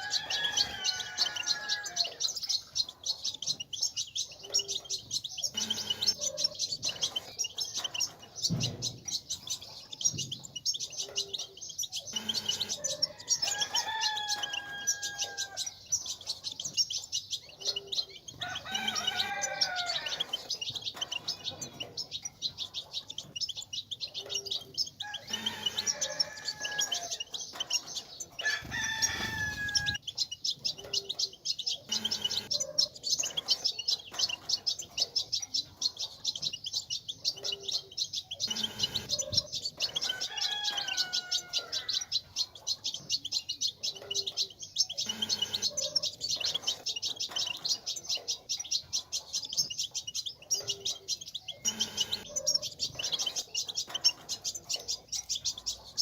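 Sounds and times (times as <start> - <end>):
rooster crowing: 0.0 - 2.2, 12.2 - 15.7, 18.4 - 20.3, 25.0 - 27.2, 28.4 - 30.0, 40.0 - 42.1
goldfinches twittering: 0.0 - 56.0.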